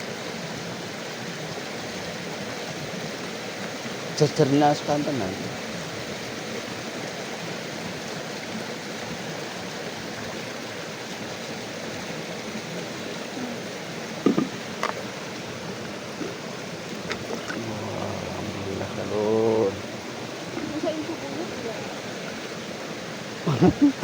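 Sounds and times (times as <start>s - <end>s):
river water flowing: 0.0s - 24.0s
short knocks: 14.2s - 15.0s.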